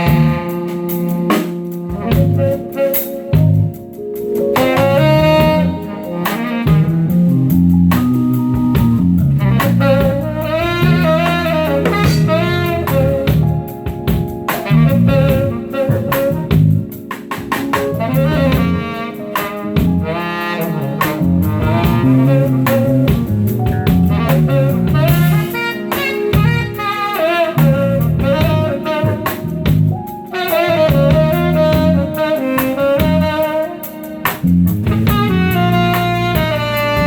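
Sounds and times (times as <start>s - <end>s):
jazz band playing: 0.0s - 37.0s.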